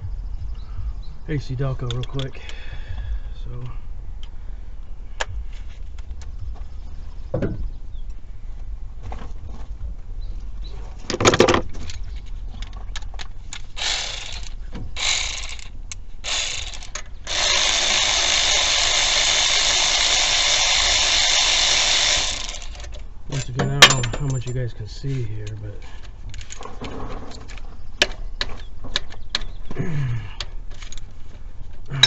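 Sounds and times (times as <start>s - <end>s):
handheld power tool running: 13.8s - 23.0s.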